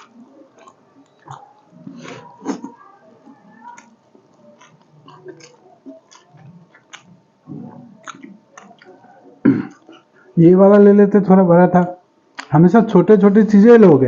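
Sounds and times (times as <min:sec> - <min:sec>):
person chewing food: 0:00.0 - 0:10.3.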